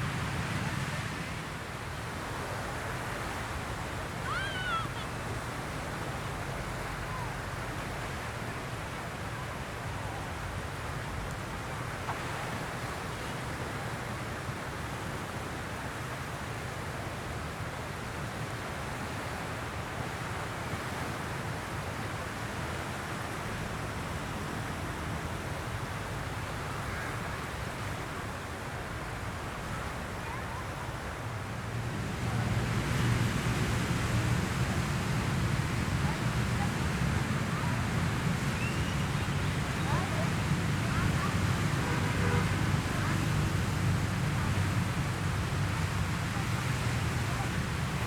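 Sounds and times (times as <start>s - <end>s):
low rumble of waves: 0.0s - 48.0s
surf washing onto sand: 18.7s - 48.0s.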